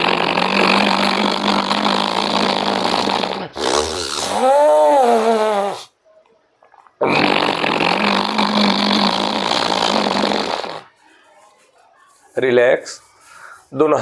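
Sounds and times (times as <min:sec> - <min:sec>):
rasping throat breathing: 0:00.0 - 0:05.9, 0:06.7 - 0:11.4.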